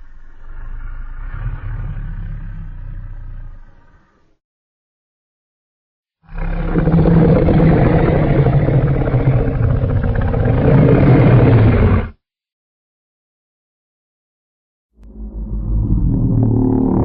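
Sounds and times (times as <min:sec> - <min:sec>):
monster roar: 0:06.3 - 0:12.2.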